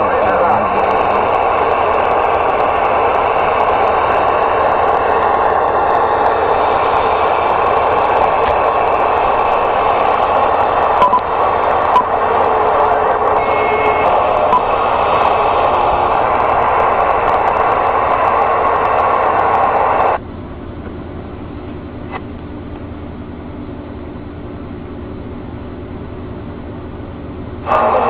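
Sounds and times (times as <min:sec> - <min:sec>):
radio static hiss: 0:00.0 - 0:20.2, 0:27.6 - 0:28.0.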